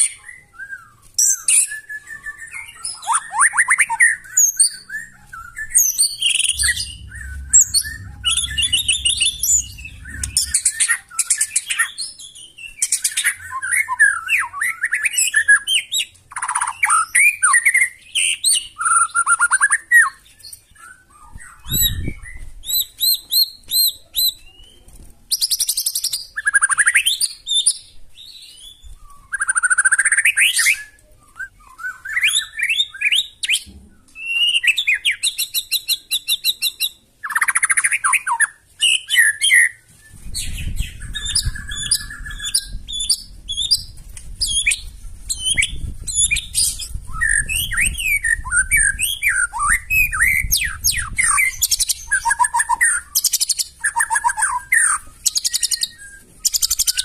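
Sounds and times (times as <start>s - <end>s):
bird singing varied song: 0.0s - 57.0s
low rumble: 5.4s - 11.1s.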